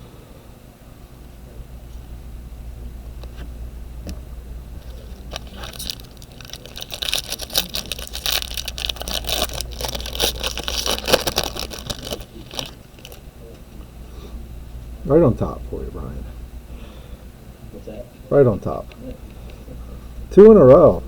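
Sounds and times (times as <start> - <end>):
steady low hum: 0.0 - 21.0
cards and wrappers rustling: 4.8 - 13.2.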